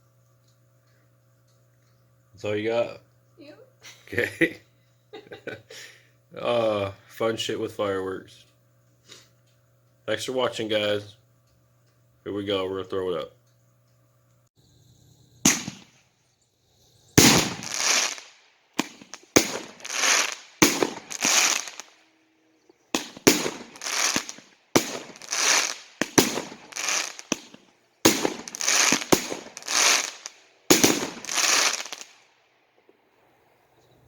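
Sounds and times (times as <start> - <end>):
firework lift cracks: 15.4 - 16.1, 17.2 - 33.0
loud firework flash breaks: 15.4 - 16.1, 17.2 - 22.0, 22.9 - 32.3.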